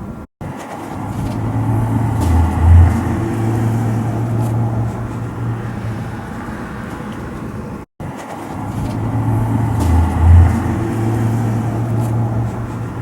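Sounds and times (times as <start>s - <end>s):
low droning hum: 1.0s - 6.6s, 8.7s - 13.0s.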